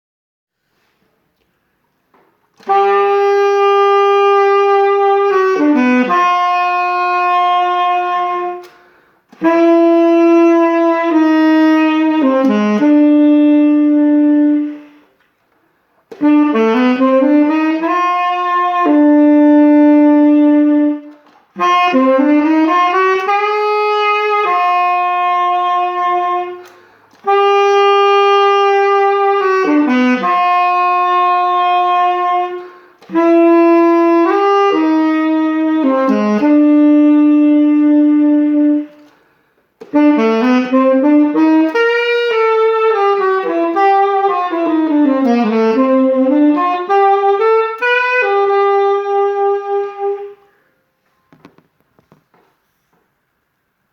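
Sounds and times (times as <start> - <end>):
solo saxophone: 0.7 - 53.9.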